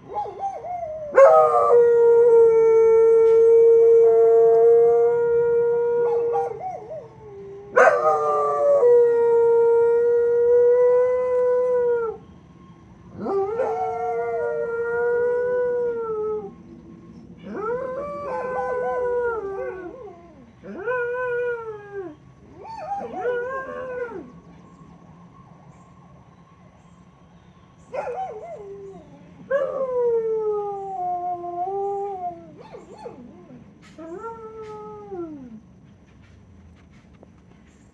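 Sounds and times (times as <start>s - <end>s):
hound dogs howling: 0.0s - 12.2s, 13.1s - 24.6s, 27.9s - 35.6s
faint steady tone: 8.6s - 36.3s
siren: 22.1s - 29.9s.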